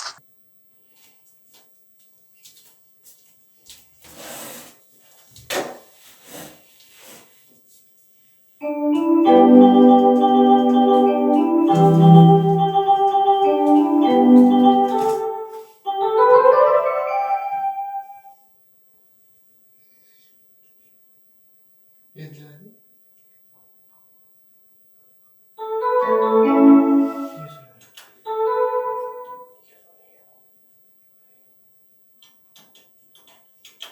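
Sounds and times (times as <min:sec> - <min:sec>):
electronic keyboard jingle: 0:08.6 - 0:18.2, 0:25.6 - 0:27.6, 0:28.3 - 0:29.4.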